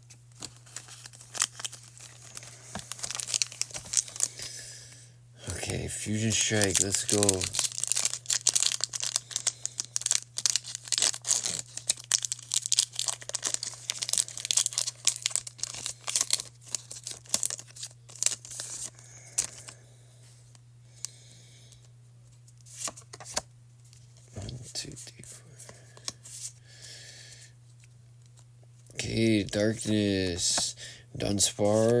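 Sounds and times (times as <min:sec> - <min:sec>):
foil wrapper tearing and crinkling: 0:00.4 - 0:04.5, 0:06.1 - 0:19.8.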